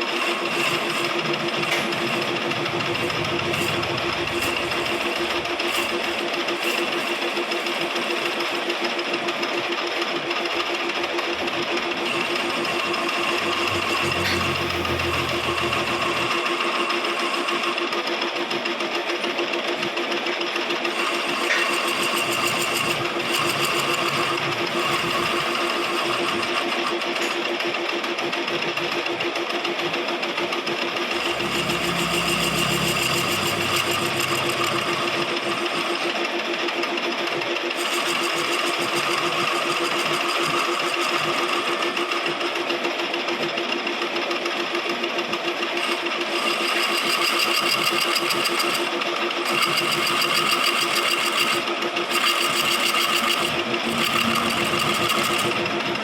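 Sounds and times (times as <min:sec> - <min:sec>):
lathe motor hum: 0:00.0 - 0:56.0
low rumble: 0:12.7 - 0:16.4.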